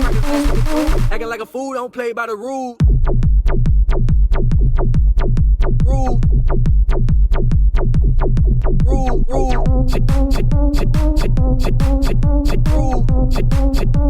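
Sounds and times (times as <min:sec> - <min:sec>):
electronic dance music: 0:00.0 - 0:01.9, 0:02.8 - 0:08.1, 0:08.7 - 0:14.0
pitched vocal chops: 0:00.0 - 0:02.9, 0:05.8 - 0:06.4, 0:08.7 - 0:14.0.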